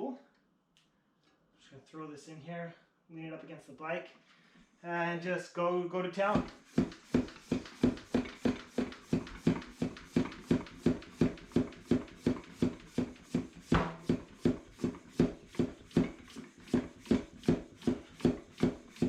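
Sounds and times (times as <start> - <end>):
floor pump hissing and squeaking: 6.2 - 19.0
sharp knock: 13.7 - 14.3.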